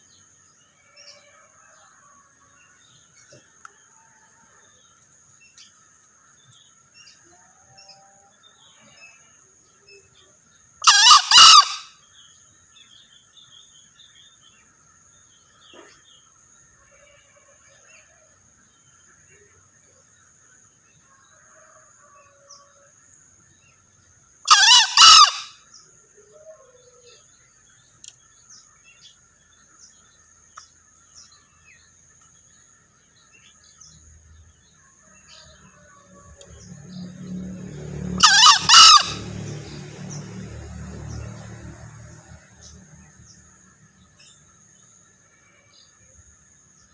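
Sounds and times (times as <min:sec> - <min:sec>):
insect drone: 0:00.0 - 0:46.9
junglefowl crowing: 0:10.8 - 0:12.0, 0:24.5 - 0:25.7, 0:38.0 - 0:40.1.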